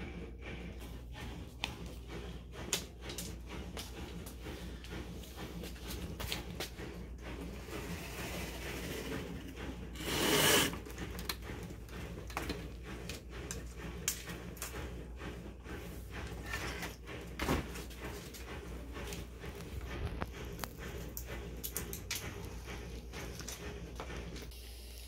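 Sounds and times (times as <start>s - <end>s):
scraping rub: 0.0s - 24.5s
steady low hum: 0.0s - 24.8s.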